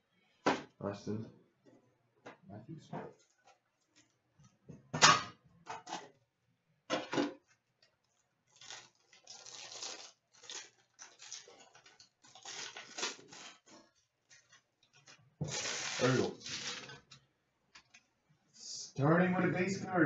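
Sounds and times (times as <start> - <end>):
wrapper rustling and tearing: 8.4 - 17.2.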